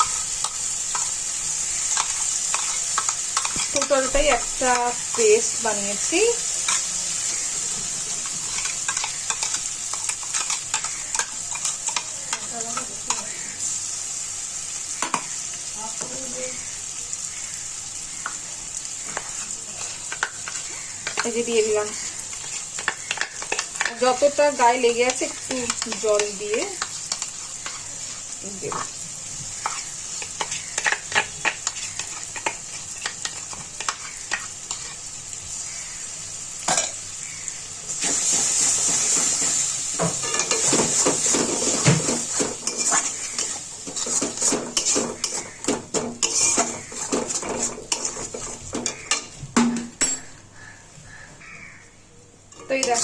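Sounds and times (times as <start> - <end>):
metal spatula scraping a pan: 0.0 - 13.8, 19.0 - 35.1, 38.0 - 49.4, 52.5 - 53.0
paste sizzling in hot oil: 0.0 - 49.4, 52.6 - 53.0.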